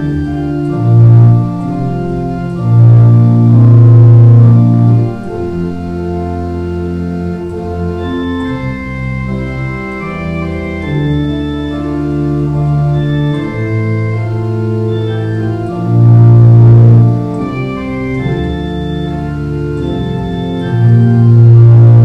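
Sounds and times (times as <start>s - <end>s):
organ playing sustained chords: 0.0s - 22.0s.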